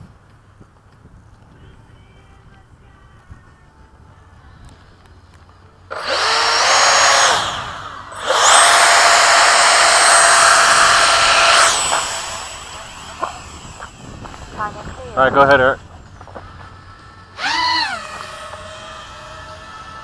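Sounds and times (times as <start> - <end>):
model jet fan whine: 4.4 - 20.0.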